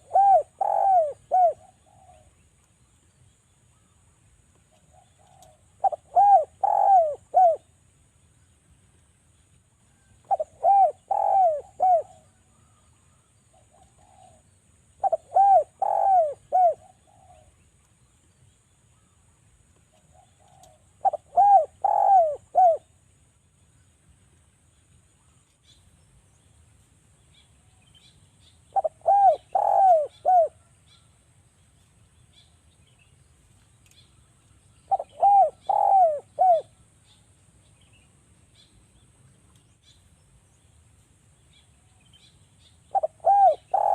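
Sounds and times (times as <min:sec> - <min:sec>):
dove cooing: 0:00.0 - 0:02.4, 0:04.7 - 0:07.7, 0:10.2 - 0:12.3, 0:13.6 - 0:17.5, 0:20.0 - 0:22.9, 0:28.7 - 0:30.8, 0:34.9 - 0:36.8, 0:42.9 - 0:43.9.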